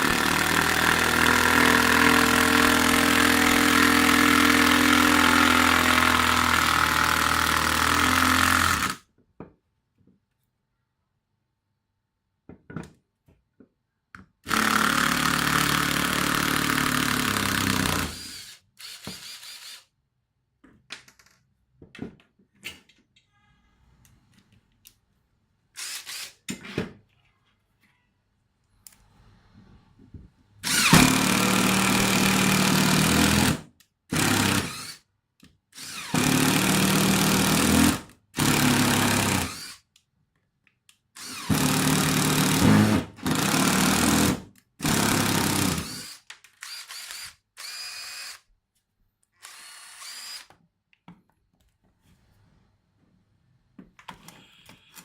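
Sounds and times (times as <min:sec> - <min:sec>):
cordless impact driver running: 0:00.0 - 0:09.0, 0:14.5 - 0:19.8, 0:30.6 - 0:35.0, 0:35.8 - 0:39.8, 0:41.2 - 0:48.4, 0:49.4 - 0:50.5.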